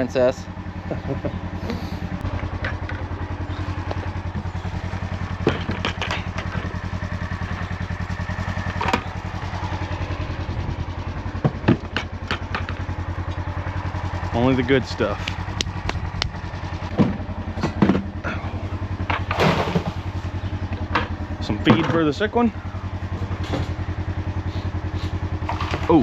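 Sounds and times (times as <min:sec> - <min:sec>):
farm machine engine idling: 0:00.0 - 0:26.0
knocks and clatters: 0:02.2 - 0:03.2, 0:05.3 - 0:07.0, 0:08.6 - 0:09.2, 0:11.3 - 0:13.5, 0:15.1 - 0:18.3, 0:19.0 - 0:22.2, 0:23.2 - 0:23.9, 0:25.4 - 0:26.0.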